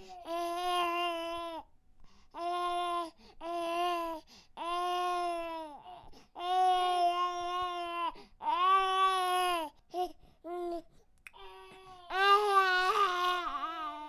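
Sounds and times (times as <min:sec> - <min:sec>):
infant crying: 0:02.4 - 0:10.6, 0:11.4 - 0:14.0.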